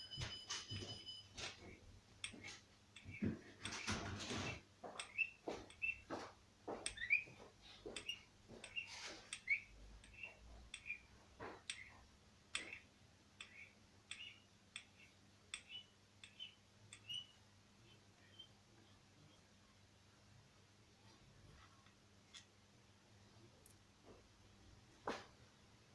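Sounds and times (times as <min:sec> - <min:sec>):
hand tools clicking on metal: 0:01.5 - 0:12.8.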